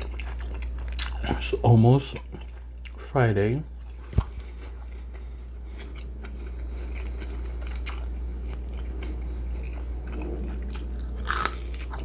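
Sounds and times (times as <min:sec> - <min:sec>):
wet chewing with crunches: 0:00.0 - 0:03.1, 0:03.7 - 0:12.0
steady low hum: 0:00.0 - 0:12.0.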